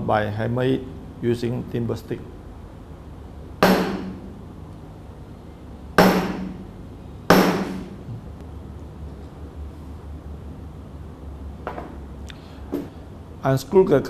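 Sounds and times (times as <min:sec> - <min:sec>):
hammer blows ringing in metal: 0:03.6 - 0:04.3, 0:06.0 - 0:06.7, 0:07.3 - 0:08.0.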